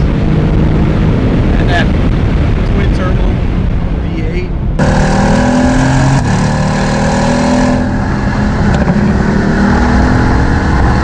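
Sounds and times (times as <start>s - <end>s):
car engine accelerating hard: 4.8s - 11.0s.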